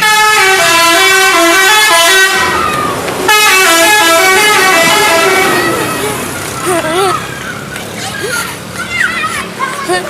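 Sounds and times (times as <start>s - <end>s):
bus horn playing a tune: 0.0s - 2.6s, 3.2s - 6.2s.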